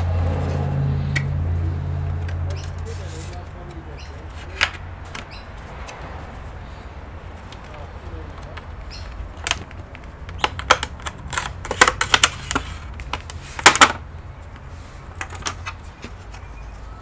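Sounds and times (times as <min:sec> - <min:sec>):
tools clicking on laptop case: 0:08.4 - 0:16.4.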